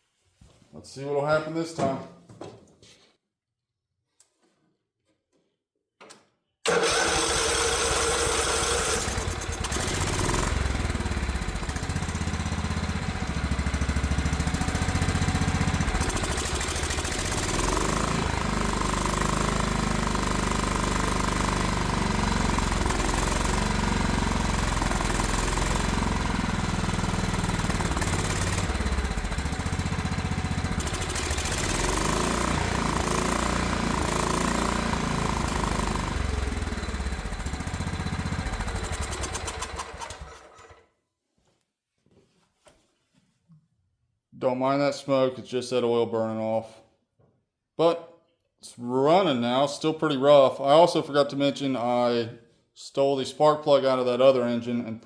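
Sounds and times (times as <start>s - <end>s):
small gasoline engine running roughly: 6.7s - 40.8s.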